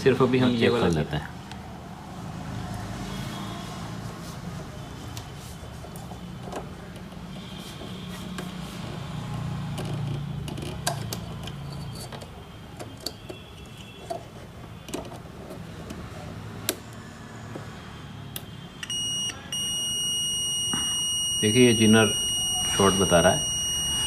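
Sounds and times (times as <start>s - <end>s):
multimeter continuity beep: 18.8s - 24.0s.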